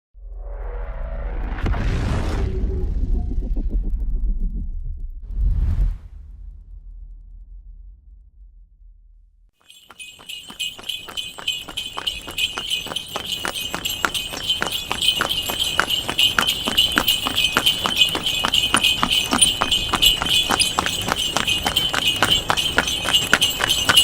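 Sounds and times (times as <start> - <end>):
hoof clops: 9.6 - 24.0
horse bells jingling: 9.6 - 24.0.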